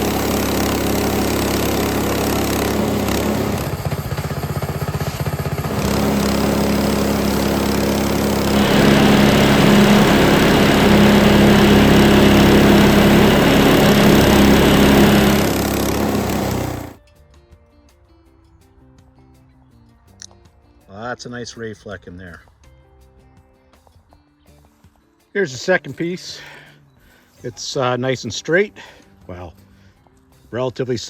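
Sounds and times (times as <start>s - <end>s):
band saw blade cutting wood: 0.0s - 17.0s
gasoline engine running: 0.0s - 17.0s.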